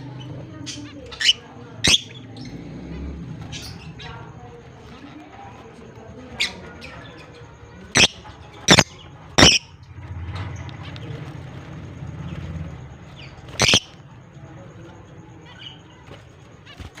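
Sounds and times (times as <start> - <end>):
lovebirds calling shrilly: 0.0 - 2.8, 3.4 - 5.3, 6.2 - 14.1, 15.4 - 17.0
faint chirping: 0.0 - 17.0.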